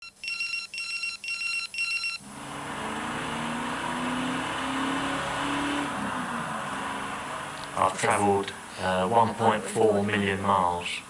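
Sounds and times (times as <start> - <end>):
short electronic beeps: 0.0 - 2.2
car engine shifting up gears: 2.2 - 9.8
road noise: 2.2 - 11.0.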